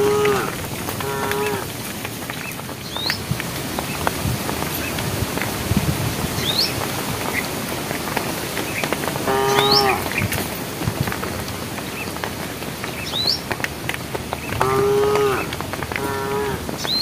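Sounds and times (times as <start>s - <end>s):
cow mooing: 0.0s - 1.7s, 9.3s - 10.0s, 14.6s - 16.6s.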